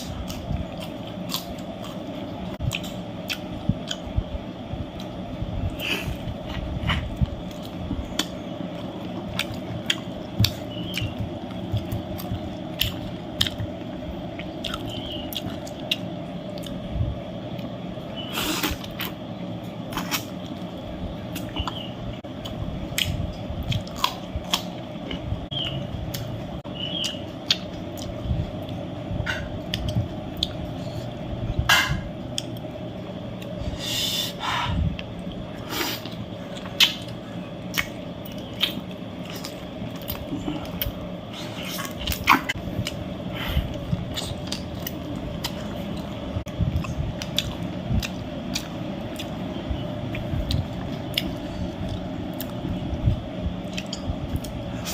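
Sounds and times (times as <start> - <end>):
person chewing and smacking: 0.0 - 4.2, 5.0 - 16.8, 21.3 - 28.8, 29.5 - 31.2, 32.2 - 32.7, 36.0 - 49.4, 50.0 - 52.6, 53.6 - 54.9
low background hum: 0.0 - 54.9.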